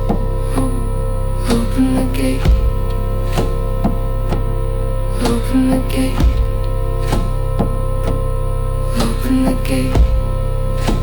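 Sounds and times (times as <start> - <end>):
dark ambient drone music: 0.0 - 11.0
low bass hum: 0.0 - 11.0
deep drum hit: 2.4 - 4.1, 6.2 - 6.6, 10.0 - 11.0.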